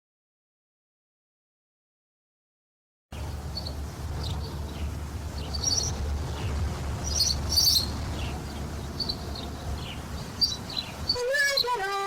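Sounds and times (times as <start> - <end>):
birds chirping: 3.2 - 12.0
cassette tape hum and hiss: 3.2 - 12.0.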